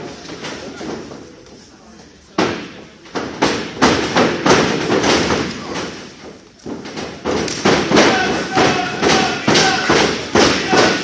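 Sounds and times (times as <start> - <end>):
bodies thudding on wrestling ring: 2.4 - 11.0.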